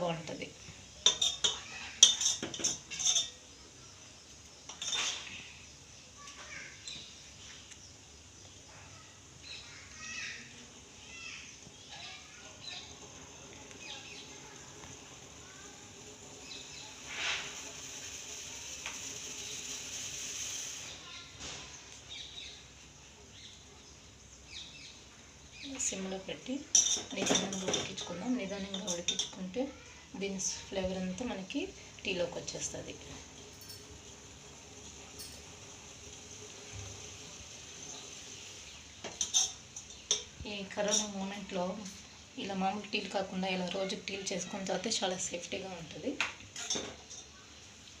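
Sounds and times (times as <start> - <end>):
tea boiling on gas stove: 0.0 - 48.0
metal kitchenware clinking on pot: 1.0 - 3.4, 4.7 - 5.3, 26.7 - 29.4, 39.0 - 41.2, 46.6 - 47.3.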